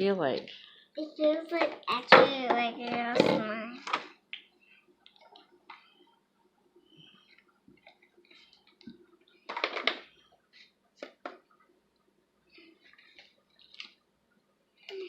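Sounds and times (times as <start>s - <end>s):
slime squelching: 12.6s - 14.1s.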